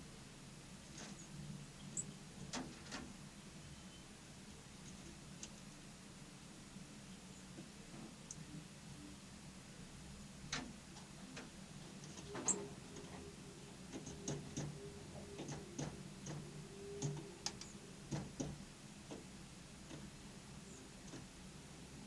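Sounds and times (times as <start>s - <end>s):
birds pecking and tapping: 10.5s - 13.3s, 13.9s - 20.2s, 20.8s - 21.4s.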